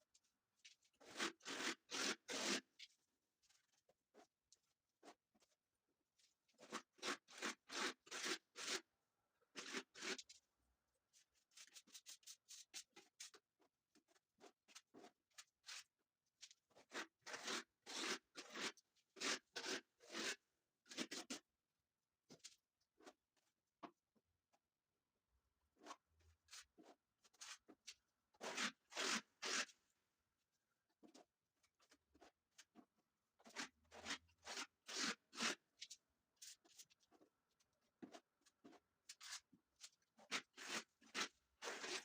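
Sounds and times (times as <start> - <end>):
putty knife scraping filler on wall: 0.8 - 2.8, 6.6 - 8.9, 9.5 - 10.3, 16.6 - 21.5, 25.8 - 29.9, 31.0 - 36.8, 37.9 - 42.0.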